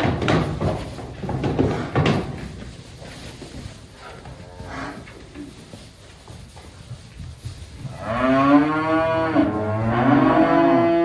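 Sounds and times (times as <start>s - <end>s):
knocking and rattling: 0.0s - 4.4s.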